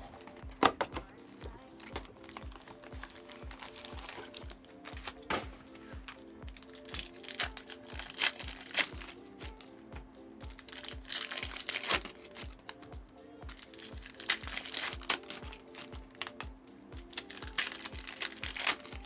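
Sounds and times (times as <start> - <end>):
background music with steady beat: 0.0 - 19.0
foil packs crinkling and tearing: 1.8 - 5.5, 6.1 - 9.6, 10.5 - 12.8, 13.5 - 19.0.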